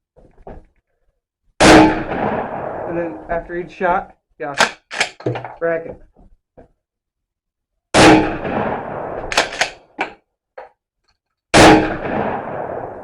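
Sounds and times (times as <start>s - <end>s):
shotgun shots: 1.6s - 3.3s, 8.0s - 10.0s, 11.5s - 13.0s
shotgun pump racking clacks: 4.6s - 5.6s.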